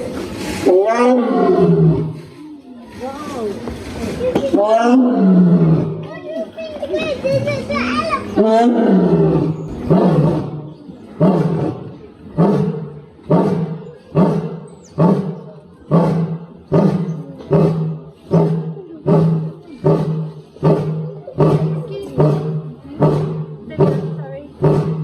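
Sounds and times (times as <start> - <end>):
lion grunting roars: 0.6 - 2.3, 4.6 - 6.0, 8.4 - 25.0.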